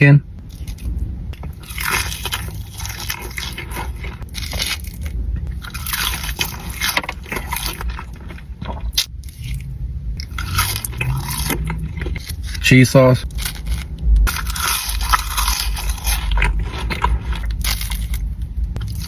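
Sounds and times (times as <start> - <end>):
crunchy chewing of fried chicken: 0.4 - 19.0.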